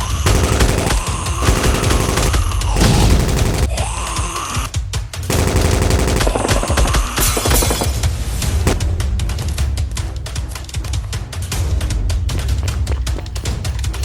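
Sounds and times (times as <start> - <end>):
action background music: 0.0 - 14.0
machine-gun fire: 0.2 - 3.8, 5.3 - 8.1.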